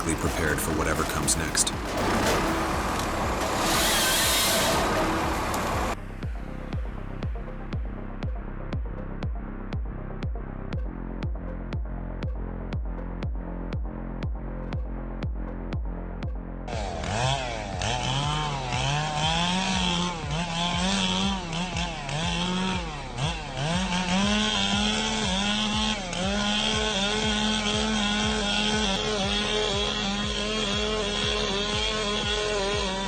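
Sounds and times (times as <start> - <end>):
chainsaw cutting wood: 0.0 - 6.0, 16.7 - 33.0.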